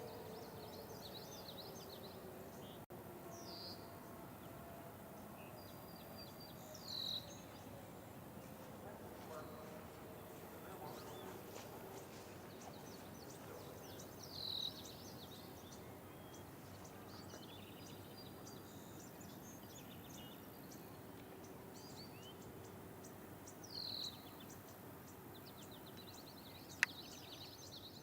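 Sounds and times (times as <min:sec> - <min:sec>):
outdoor background noise: 0:00.0 - 0:28.0
birds chirping and calling: 0:08.4 - 0:27.9.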